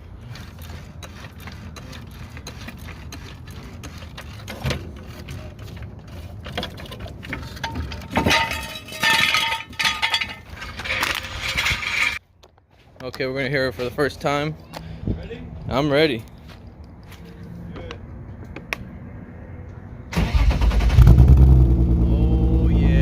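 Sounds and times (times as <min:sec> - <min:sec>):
scraping or rattling noise: 0:00.0 - 0:12.2
objects clicking and clattering: 0:00.5 - 0:12.2.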